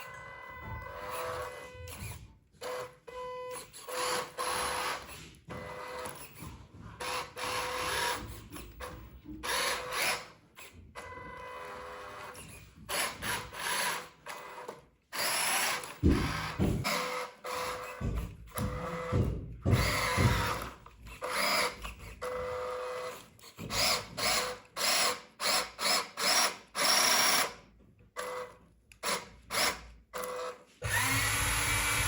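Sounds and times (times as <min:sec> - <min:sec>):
small electric motors whirring: 0:00.0 - 0:32.0.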